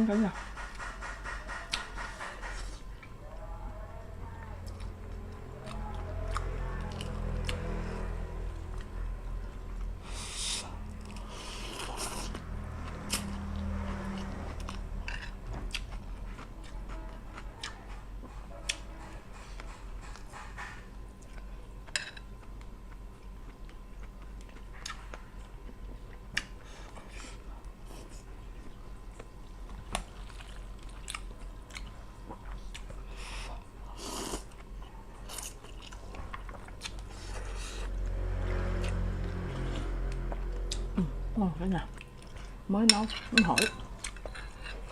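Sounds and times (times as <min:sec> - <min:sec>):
chewing and biting food: 0:10.9 - 0:27.2, 0:28.6 - 0:33.6, 0:34.3 - 0:41.1.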